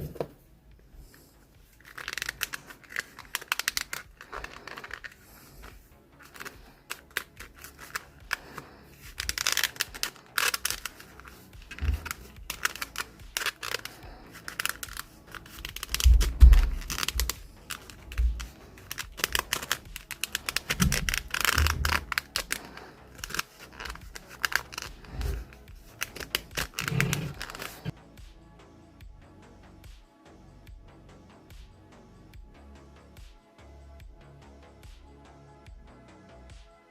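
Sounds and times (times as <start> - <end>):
tools scraping leather: 1.7 - 27.9.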